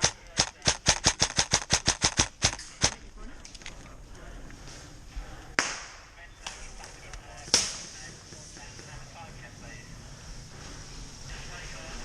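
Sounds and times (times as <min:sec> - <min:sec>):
airsoft gun shots: 0:00.0 - 0:03.0.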